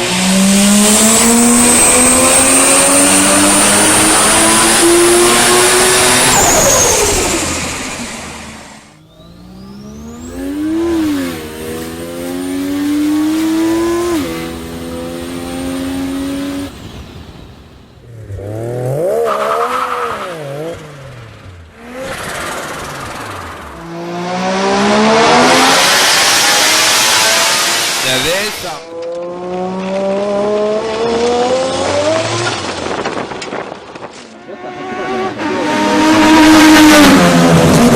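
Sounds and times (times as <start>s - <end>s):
rotary engine revving: 0.0s - 37.9s
loud rush: 9.6s - 28.9s.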